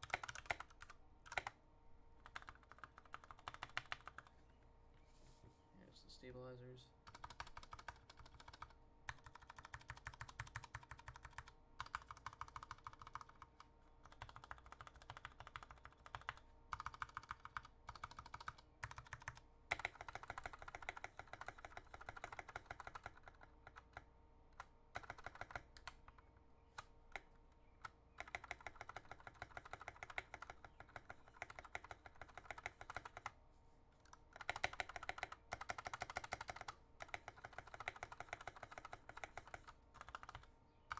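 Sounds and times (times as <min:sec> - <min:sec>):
mechanical keyboard keys clacking: 0:00.0 - 0:01.6, 0:02.2 - 0:04.3, 0:07.1 - 0:24.0, 0:24.6 - 0:26.3, 0:28.2 - 0:33.3, 0:34.1 - 0:40.9.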